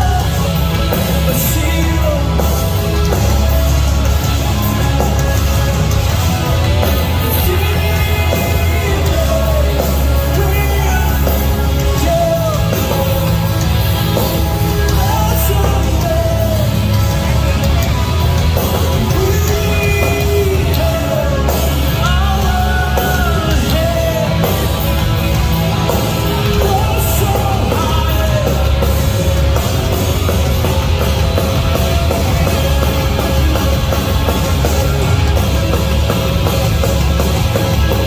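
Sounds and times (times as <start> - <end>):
person singing: 0.0 - 17.8, 18.7 - 25.0, 26.0 - 30.7
heavy rock band playing: 0.0 - 38.0.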